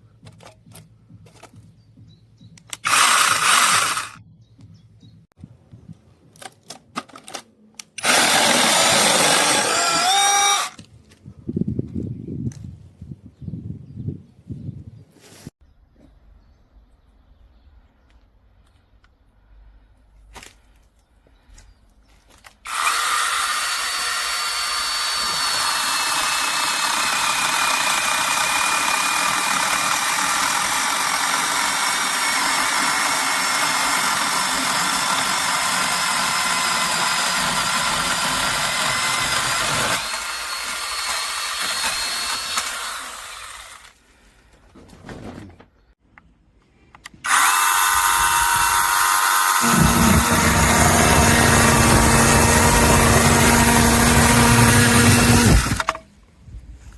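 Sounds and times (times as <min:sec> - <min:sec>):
electric chainsaw cutting branch: 0:02.7 - 0:04.2, 0:08.0 - 0:10.8, 0:22.6 - 0:44.0, 0:47.2 - 0:56.0.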